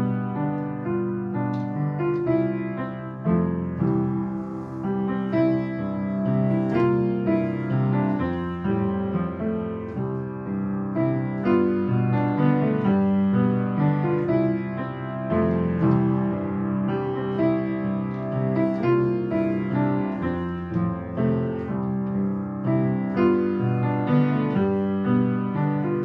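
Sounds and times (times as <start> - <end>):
piano melody with chords: 0.0 - 26.0.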